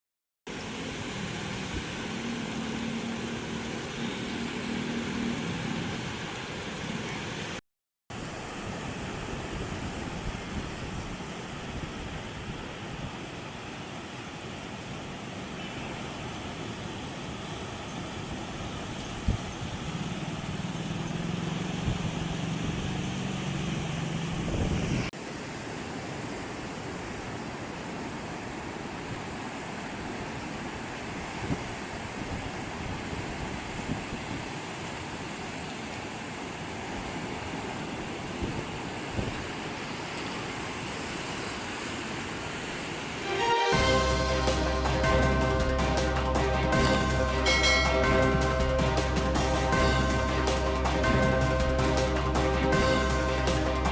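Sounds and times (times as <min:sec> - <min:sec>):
sea surf breaking on shore: 0:00.5 - 0:07.6
gusty wind: 0:08.2 - 0:13.7, 0:21.7 - 0:25.1
wind gusting on microphone: 0:23.8 - 0:25.1.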